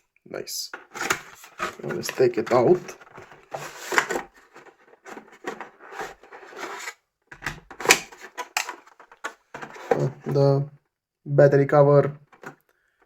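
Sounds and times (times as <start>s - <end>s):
cardboard packaging scraping: 0.8s - 10.3s.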